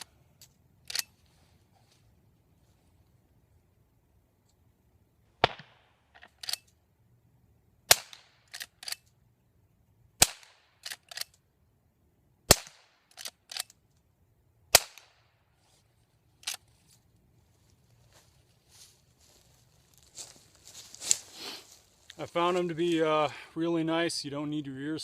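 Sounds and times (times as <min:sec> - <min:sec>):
subdued rifle shots: 0:05.4 - 0:06.6, 0:10.2 - 0:11.2, 0:12.5 - 0:13.6, 0:14.7 - 0:15.2
rifle lever clicks: 0:06.2 - 0:06.8, 0:08.5 - 0:09.2, 0:10.8 - 0:11.4, 0:13.1 - 0:13.8.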